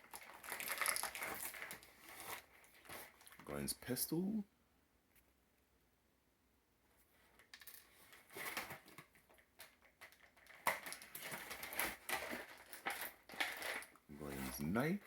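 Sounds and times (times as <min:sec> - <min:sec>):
plastic crinkles and rattles: 0:00.0 - 0:03.6, 0:07.3 - 0:15.0.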